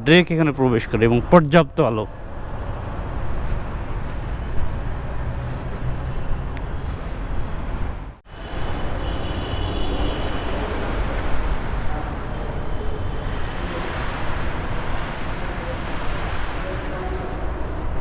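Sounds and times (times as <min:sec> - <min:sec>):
road traffic rumble: 0:00.0 - 0:18.0
murmur of voices: 0:10.1 - 0:18.0.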